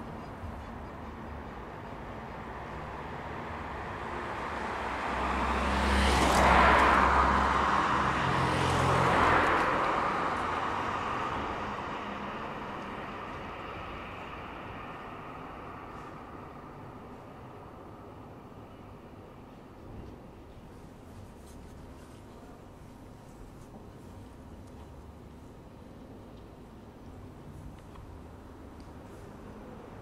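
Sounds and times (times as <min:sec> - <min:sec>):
cars passing: 0:00.0 - 0:19.1.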